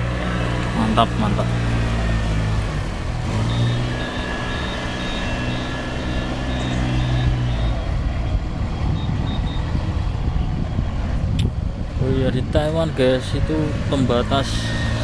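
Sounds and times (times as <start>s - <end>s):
small engine running: 0.0s - 8.0s
faint high pulsing beep: 3.4s - 10.1s, 14.5s - 15.0s.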